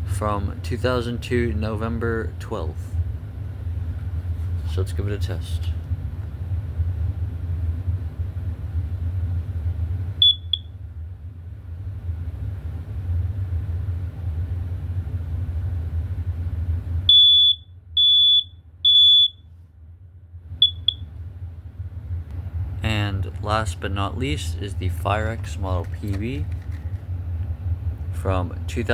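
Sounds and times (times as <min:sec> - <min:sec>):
smoke alarm beeps: 0:10.2 - 0:10.8, 0:17.1 - 0:19.5, 0:20.6 - 0:21.1
smoke alarm chirps: 0:10.2 - 0:10.8, 0:17.1 - 0:19.5, 0:20.6 - 0:21.1.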